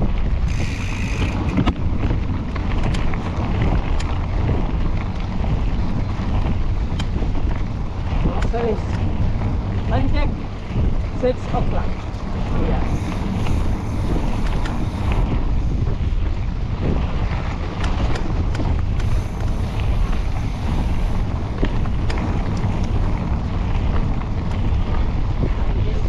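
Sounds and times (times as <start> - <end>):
bike clicks and rattles: 0.0 - 11.2, 11.8 - 26.0
wind buffeting microphone: 0.0 - 26.0.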